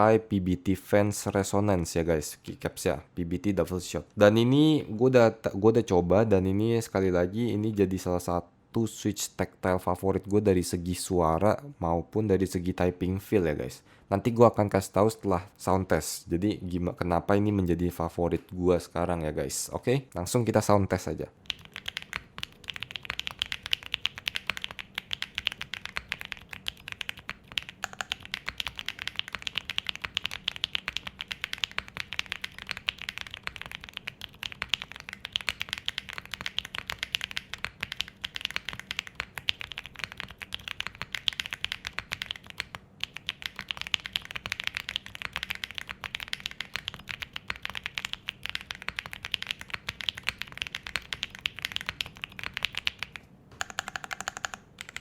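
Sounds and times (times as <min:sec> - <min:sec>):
fast mechanical keyboard typing: 0:21.4 - 0:55.0.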